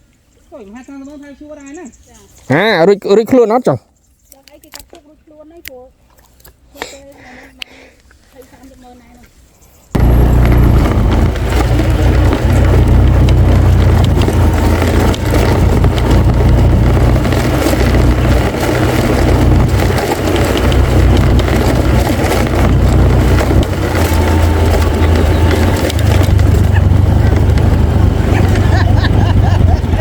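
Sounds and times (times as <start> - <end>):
motor engine running: 10.0 - 30.0.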